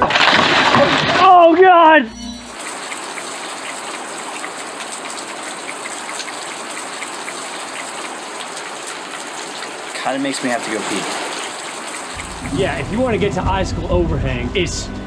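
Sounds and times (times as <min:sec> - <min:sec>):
water splashing on rock: 0:00.0 - 0:01.3, 0:10.2 - 0:13.0.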